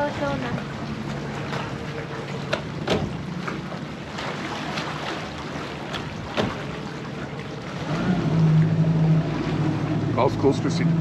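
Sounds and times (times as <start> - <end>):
sea water lapping against boat hull: 0.0 - 11.0
sharp slaps of water: 0.5 - 8.7.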